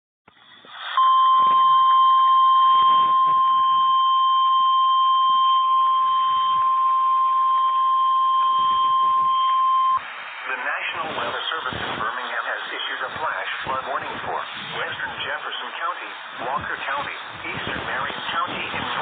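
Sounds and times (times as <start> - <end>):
weather radio alarm tone: 0.8 - 12.7.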